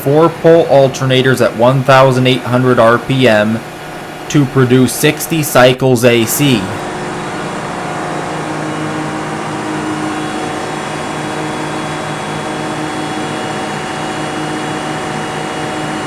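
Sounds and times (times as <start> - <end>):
gas engines droning: 0.0 - 16.0
generator hum: 0.0 - 16.0.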